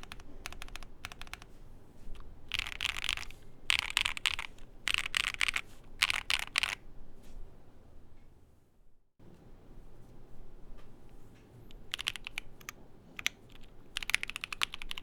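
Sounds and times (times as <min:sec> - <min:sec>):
mechanical keyboard typing: 0:00.0 - 0:01.5, 0:02.5 - 0:06.8, 0:11.7 - 0:15.0.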